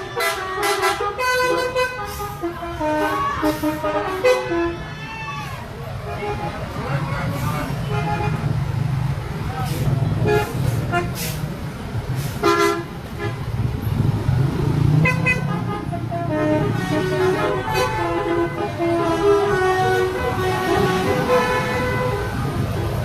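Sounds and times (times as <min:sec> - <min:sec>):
bus musical horns playing tunes: 0:00.0 - 0:04.9, 0:06.0 - 0:06.7, 0:07.3 - 0:08.6, 0:10.2 - 0:11.5, 0:12.2 - 0:13.6, 0:14.9 - 0:23.0
engine and road rumble: 0:00.0 - 0:23.0.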